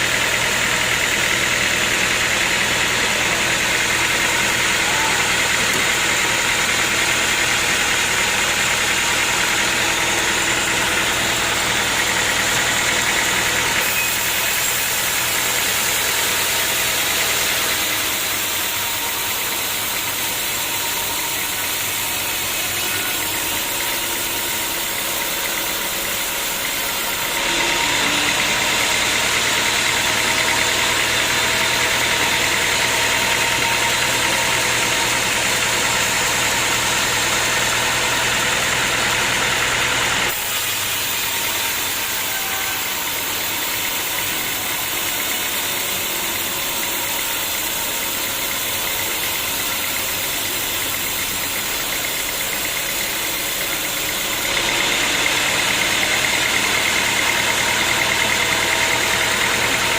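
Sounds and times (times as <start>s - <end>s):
sawmill machinery drone: 0.0s - 59.9s.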